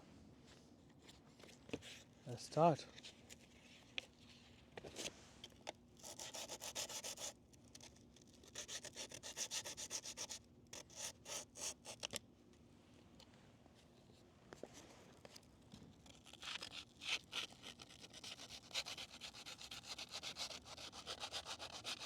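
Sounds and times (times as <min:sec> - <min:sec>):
sandpaper rubbing on metal rim: 0:18.2 - 0:22.0.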